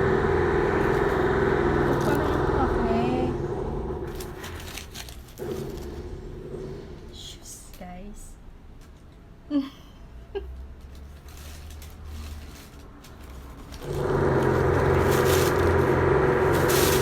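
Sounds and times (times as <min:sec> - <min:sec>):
machine hum with low buzz: 0:00.0 - 0:07.4, 0:13.7 - 0:17.0.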